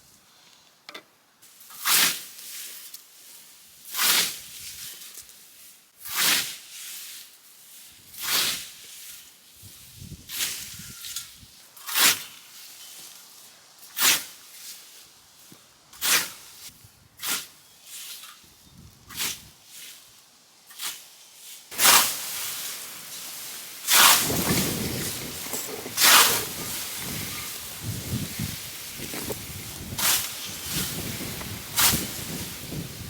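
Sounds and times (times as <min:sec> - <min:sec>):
rustle of cut grass: 0:01.4 - 0:33.0
scythe swishing through grass: 0:01.7 - 0:02.8, 0:03.9 - 0:09.2, 0:16.0 - 0:18.3, 0:20.7 - 0:33.0
footsteps in grass: 0:21.8 - 0:33.0.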